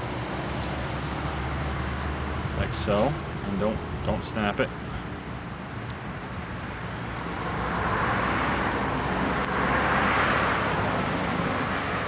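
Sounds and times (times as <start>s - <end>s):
passing vehicle rushing: 6.4s - 12.0s.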